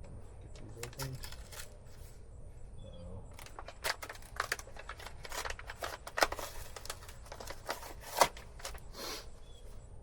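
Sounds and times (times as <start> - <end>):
wet paper crackling and rustling: 3.4 - 8.8.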